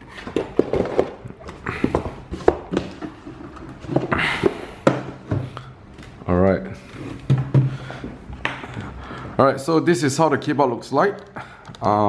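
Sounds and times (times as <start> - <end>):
cardboard packaging rustling: 0.0 - 6.2.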